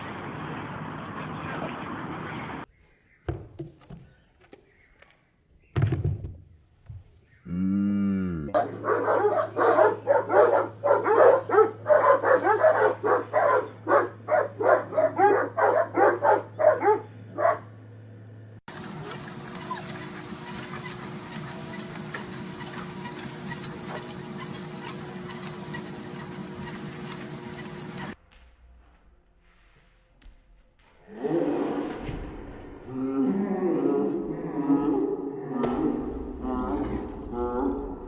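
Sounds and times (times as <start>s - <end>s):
dog barking rapidly: 8.6s - 17.7s.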